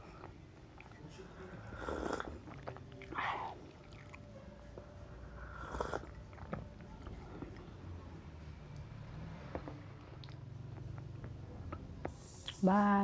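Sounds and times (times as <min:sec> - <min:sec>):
chewing food: 0:00.0 - 0:04.9, 0:05.5 - 0:07.7, 0:09.5 - 0:11.9
loud bites and mouth noises: 0:01.8 - 0:04.2.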